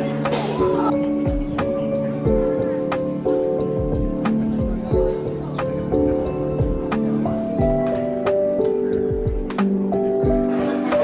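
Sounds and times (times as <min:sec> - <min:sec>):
kick drum thuds: 0:01.3 - 0:01.6, 0:02.3 - 0:02.6, 0:03.8 - 0:05.3, 0:06.6 - 0:07.0, 0:07.6 - 0:08.0, 0:09.1 - 0:09.6.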